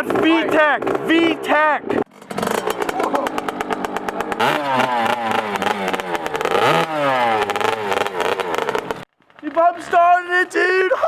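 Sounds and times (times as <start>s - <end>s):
pit bike engine revving: 2.0s - 9.1s.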